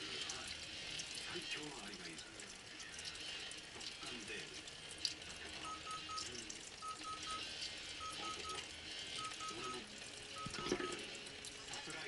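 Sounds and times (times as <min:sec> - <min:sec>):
electronic beeps: 0:05.6 - 0:07.4, 0:08.0 - 0:08.6, 0:09.2 - 0:09.8, 0:10.4 - 0:11.0.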